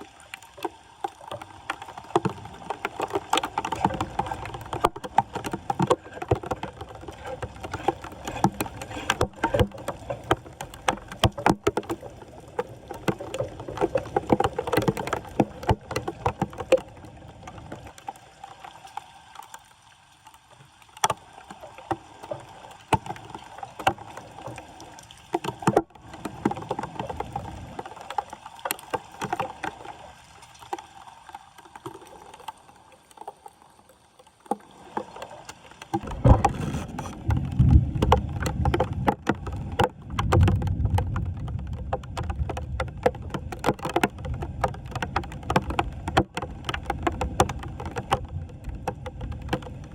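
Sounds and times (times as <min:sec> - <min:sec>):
water splashing and sloshing: 0:00.0 - 0:49.9
knocks and scrapes of debris: 0:36.0 - 0:48.3.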